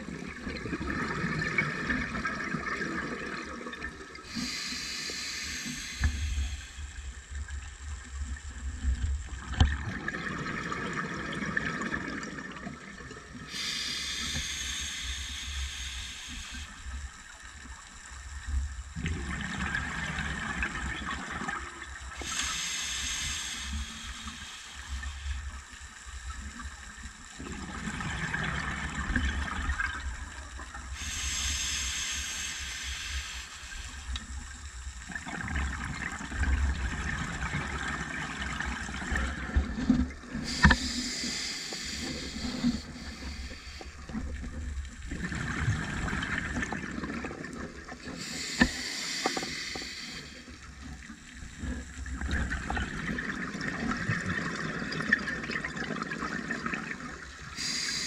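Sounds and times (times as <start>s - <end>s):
low rumble of water: 0.0s - 58.0s
regulator hissing inhalations: 4.2s - 7.2s, 13.5s - 17.1s, 22.1s - 25.6s, 30.9s - 34.3s, 40.4s - 44.4s, 48.1s - 51.1s, 57.4s - 58.0s.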